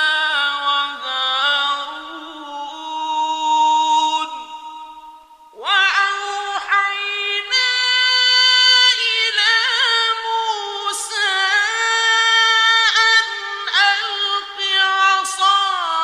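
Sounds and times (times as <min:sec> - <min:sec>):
man chanting melodic recitation: 0:00.0 - 0:16.0.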